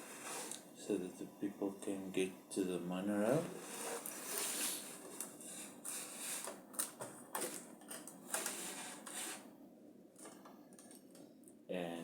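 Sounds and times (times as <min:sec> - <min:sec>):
hiss: 0:00.0 - 0:00.6
soft rustling: 0:03.4 - 0:09.4.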